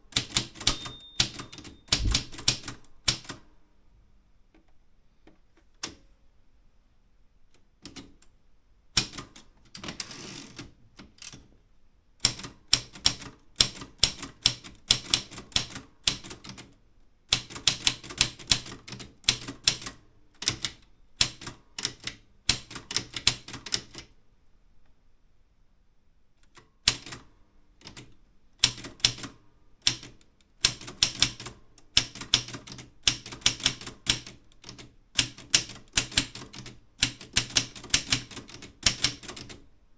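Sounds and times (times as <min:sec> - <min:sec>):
typewriter keys clacking: 0:00.2 - 0:02.8, 0:30.7 - 0:39.6.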